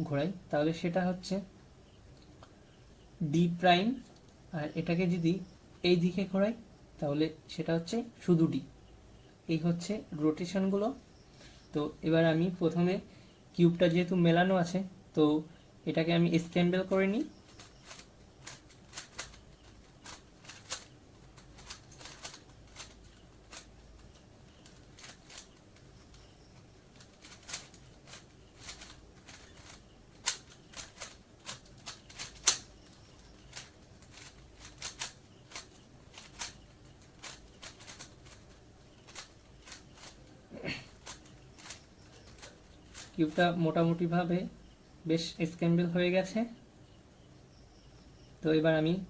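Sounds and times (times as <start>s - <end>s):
puzzle cube clicking: 17.4s - 40.3s, 40.9s - 43.2s.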